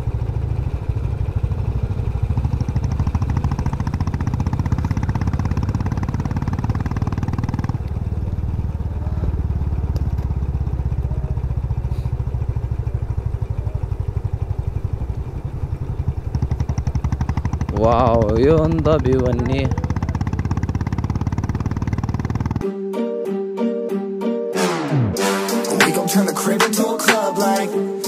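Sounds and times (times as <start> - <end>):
motorcycle engine running: 0.0 - 22.6.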